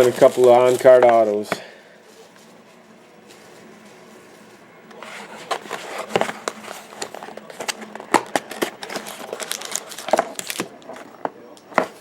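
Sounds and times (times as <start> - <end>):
packaging crinkling: 0.0 - 11.1.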